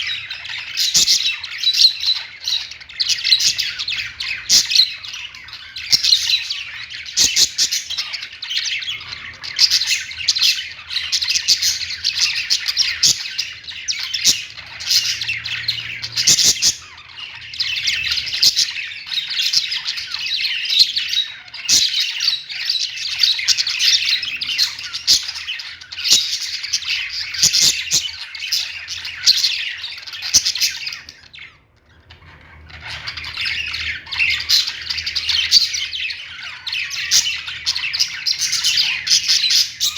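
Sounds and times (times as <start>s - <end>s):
bird chirping and chattering: 0.0s - 39.9s.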